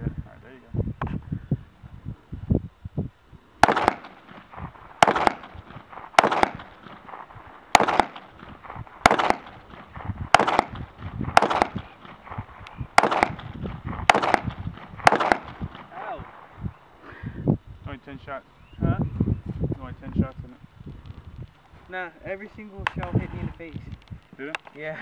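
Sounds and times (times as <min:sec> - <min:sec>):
pistol shots: 0:03.6 - 0:16.5.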